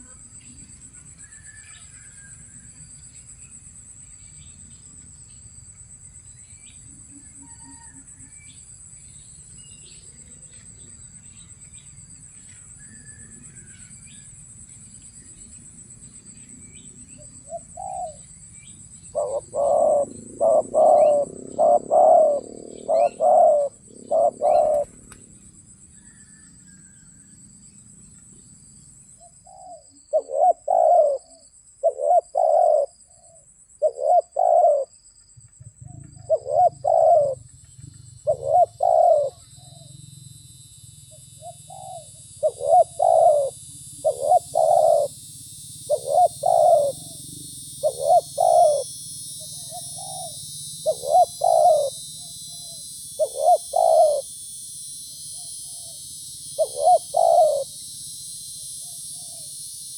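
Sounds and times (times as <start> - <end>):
high-pitched insect trill: 0.0 - 59.9
dove cooing: 17.2 - 26.9, 29.4 - 34.9, 35.8 - 40.0, 41.1 - 54.4, 55.1 - 58.0, 58.8 - 59.8.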